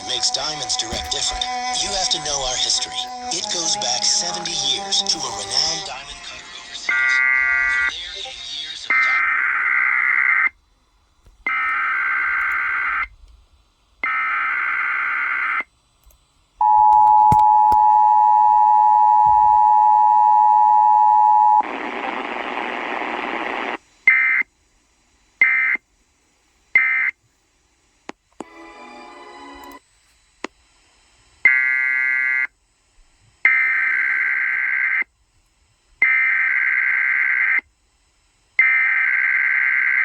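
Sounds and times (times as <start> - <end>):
screeching modem-like data bursts: 0.0 - 10.6, 11.4 - 13.1, 14.0 - 15.7, 16.6 - 24.5, 25.4 - 25.8, 26.7 - 27.2, 31.4 - 32.6, 33.4 - 35.1, 36.0 - 37.7, 38.6 - 40.0.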